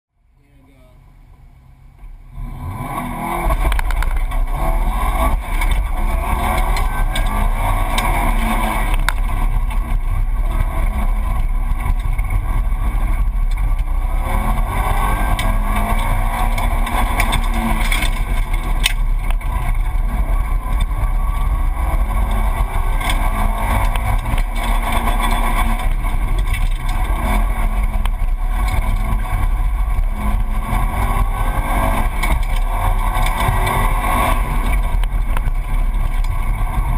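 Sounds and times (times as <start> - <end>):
car engine revving: 0.6 - 36.9.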